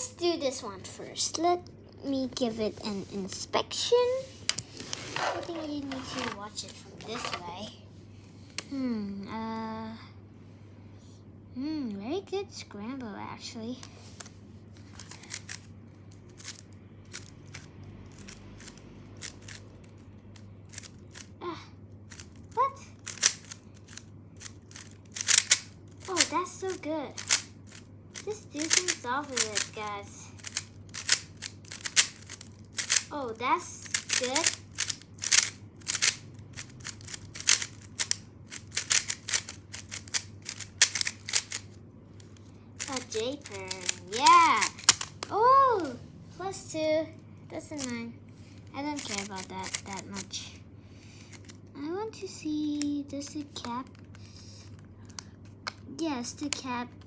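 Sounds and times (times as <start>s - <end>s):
puzzle cube clicking: 15.0s - 20.0s, 20.7s - 21.3s, 22.1s - 33.1s, 33.9s - 45.3s, 47.7s - 48.0s, 49.0s - 50.3s.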